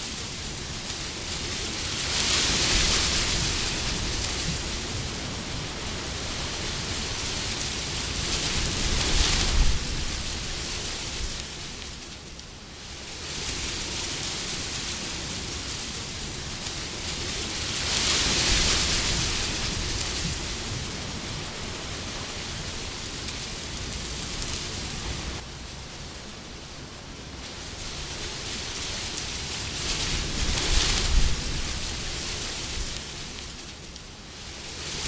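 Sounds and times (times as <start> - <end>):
wind gusting: 16.3 - 33.4.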